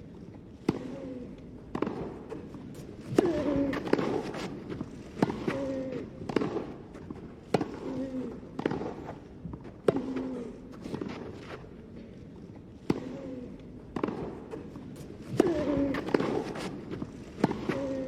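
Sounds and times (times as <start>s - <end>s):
tennis ball struck by racket: 0.6s - 1.0s, 1.7s - 11.6s, 12.8s - 13.2s, 13.9s - 18.0s.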